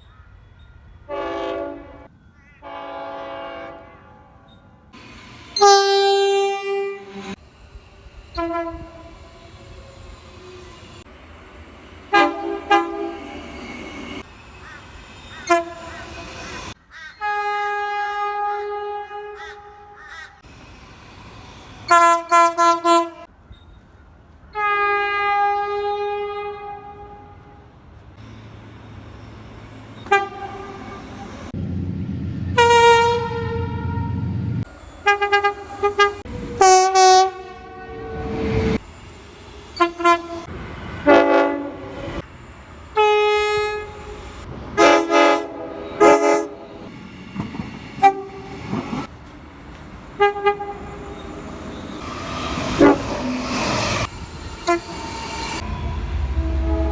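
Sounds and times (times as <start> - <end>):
short train horn toots: 1.1 - 4.6, 5.6 - 7.4, 8.3 - 11.0, 12.1 - 14.2, 15.3 - 20.3, 21.9 - 23.3, 24.6 - 27.6, 30.0 - 31.5, 32.6 - 34.2, 35.0 - 38.8, 39.8 - 42.0, 43.0 - 44.2, 44.8 - 46.9, 48.0 - 48.6, 50.2 - 56.9
train horn blasts: 1.1 - 4.7, 5.5 - 7.4, 8.3 - 11.1, 12.1 - 20.3, 21.8 - 23.3, 24.5 - 27.7, 30.0 - 31.5, 32.6 - 34.4, 35.0 - 38.8, 39.8 - 42.2, 42.9 - 44.2, 44.8 - 47.0, 48.0 - 49.1, 50.2 - 56.9.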